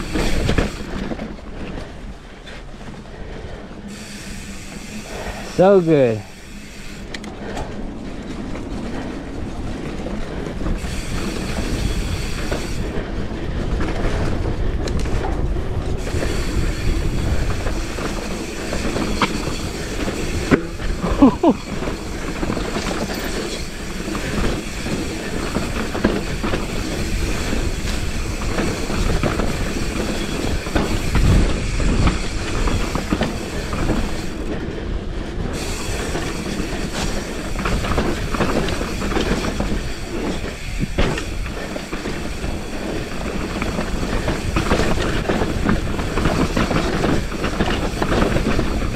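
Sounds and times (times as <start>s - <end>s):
bike jolt: 0.0s - 2.6s, 35.6s - 48.9s
bike tyres rolling on dirt: 0.0s - 48.9s
wind rush on microphone: 6.6s - 48.9s.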